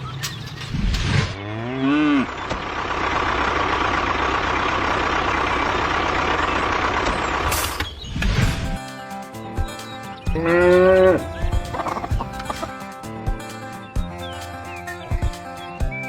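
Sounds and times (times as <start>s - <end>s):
low animal call: 10.3s - 12.7s.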